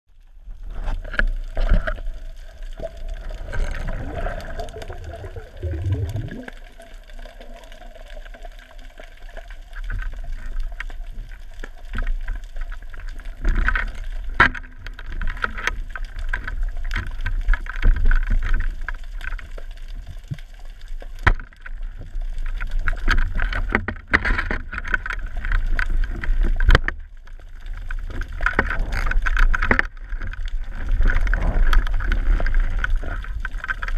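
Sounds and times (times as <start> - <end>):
muffled water gurgling: 0.1 - 33.9
low rumble: 2.4 - 7.0.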